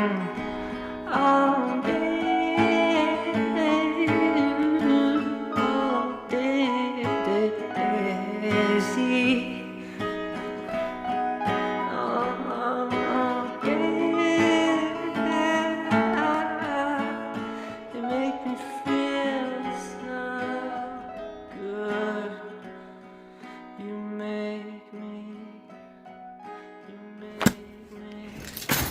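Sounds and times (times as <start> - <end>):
person singing: 0.0 - 22.8, 23.7 - 25.7
acoustic guitar: 0.0 - 28.9.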